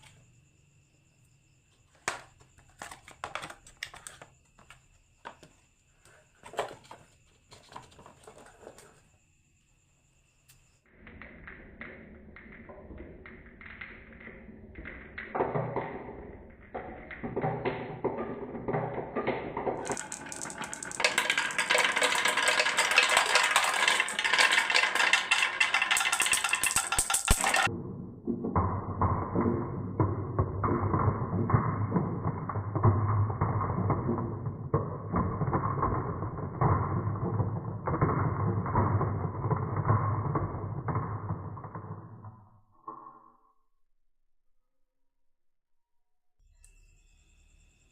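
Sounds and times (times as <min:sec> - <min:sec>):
marbles rolling down wooden run: 0:02.0 - 0:05.6, 0:10.9 - 0:43.3.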